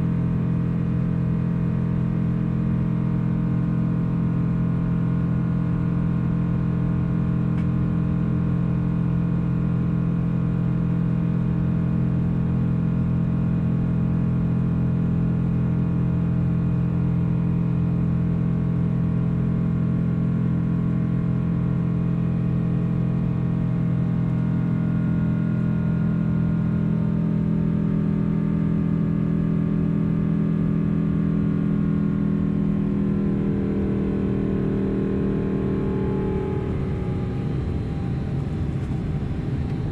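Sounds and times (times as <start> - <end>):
jet engine drone in cabin: 14.0 - 39.9.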